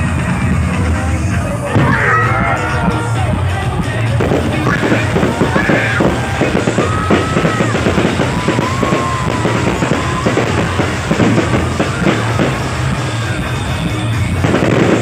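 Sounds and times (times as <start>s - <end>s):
drum-heavy music: 0.0s - 15.0s
fireworks popping and crackling: 0.0s - 15.0s.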